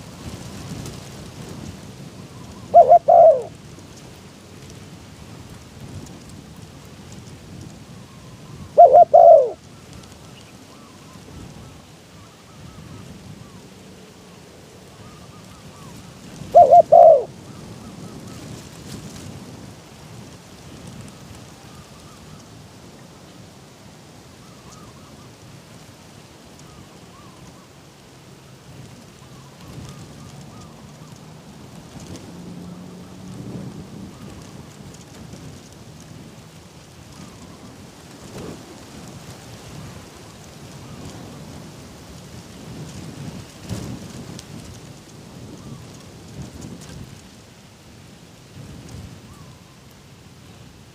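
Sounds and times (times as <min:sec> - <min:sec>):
low wind rumble: 0:00.0 - 0:50.9
distant dove calls: 0:02.3 - 0:03.6, 0:08.2 - 0:11.2, 0:14.4 - 0:18.7, 0:29.0 - 0:33.3
dove cooing: 0:02.4 - 0:03.6, 0:08.6 - 0:09.6, 0:15.0 - 0:17.3.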